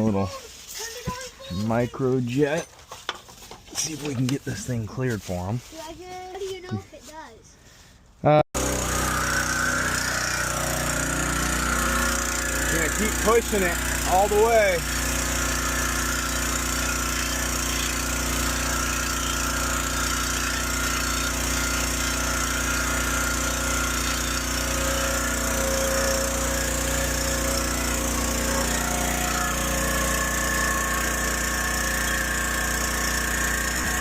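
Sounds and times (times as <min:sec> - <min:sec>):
drain jetter pump running: 0:08.6 - 0:34.0.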